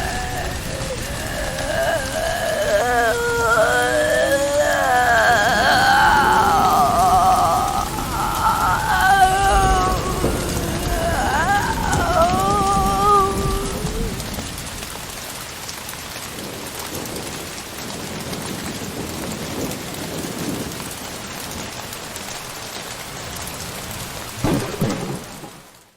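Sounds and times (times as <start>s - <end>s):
ghostly wailing cry: 0.0s - 14.6s
rain hiss: 0.0s - 25.9s.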